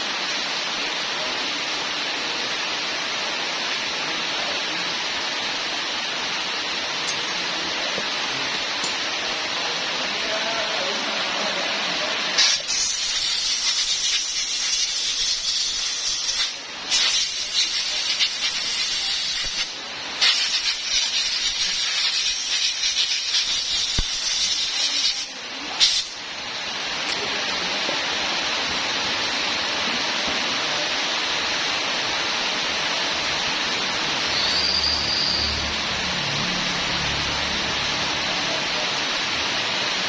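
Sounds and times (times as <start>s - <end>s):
loud hissing spray: 11.1s - 40.0s.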